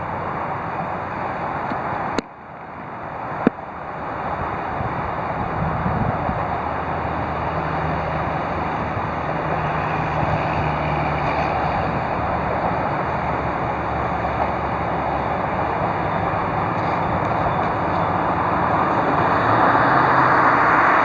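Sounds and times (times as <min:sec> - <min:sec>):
vehicle engine running: 0:03.0 - 0:21.0.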